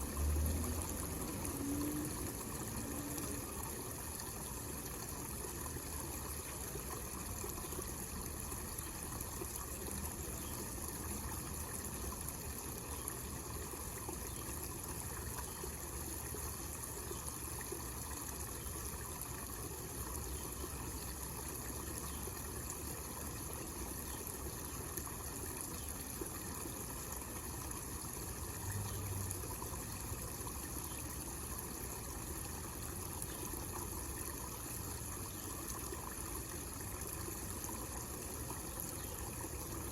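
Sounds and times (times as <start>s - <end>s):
water falling into a basin: 0.0s - 5.7s, 26.2s - 39.9s.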